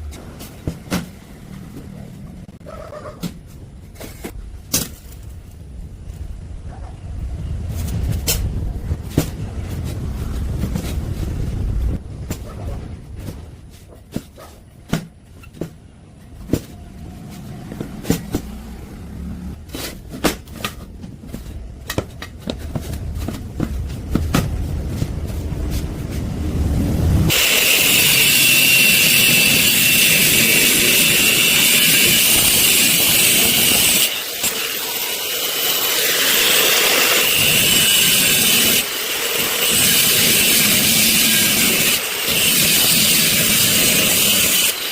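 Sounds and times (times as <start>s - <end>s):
low rumble: 3.6s - 13.7s, 22.6s - 27.3s
angle grinder grinding steel: 27.3s - 44.9s.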